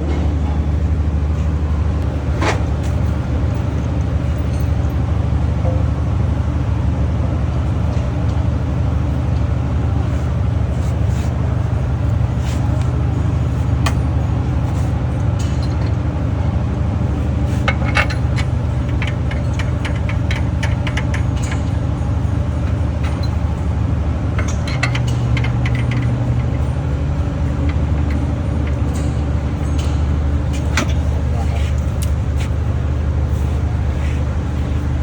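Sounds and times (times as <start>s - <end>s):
low drone of machinery: 0.0s - 35.0s
metal tools clinking and rattling: 24.3s - 32.6s.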